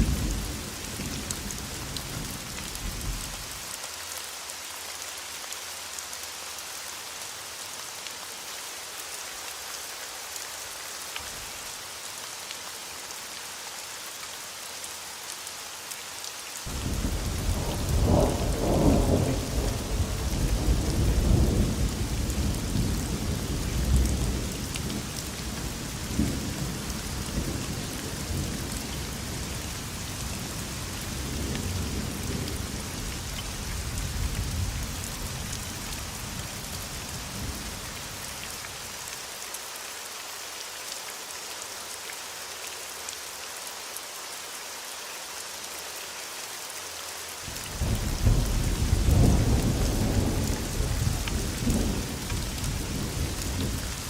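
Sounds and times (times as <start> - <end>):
steady rain hiss: 0.0 - 54.0
rolling thunder rumble: 16.7 - 24.4, 47.8 - 53.8.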